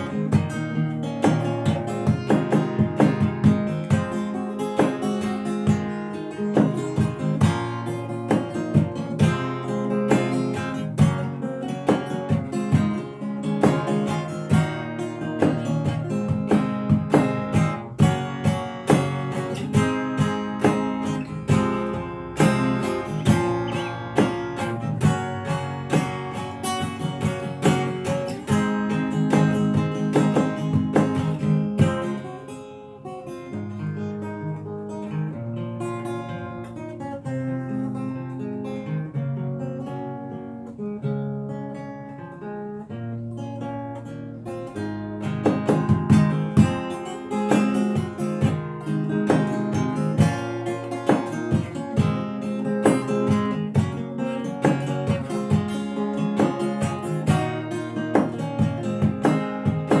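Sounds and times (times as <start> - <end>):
fingerstyle acoustic guitar: 0.0 - 60.0.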